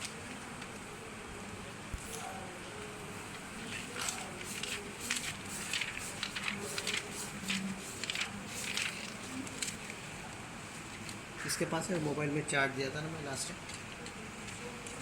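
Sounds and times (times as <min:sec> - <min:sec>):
soft rustling and handling: 0:03.2 - 0:11.2.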